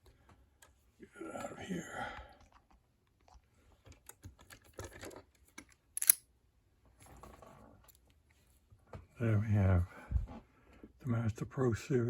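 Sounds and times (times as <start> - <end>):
lock picks clicking and rattling: 3.9 - 6.3.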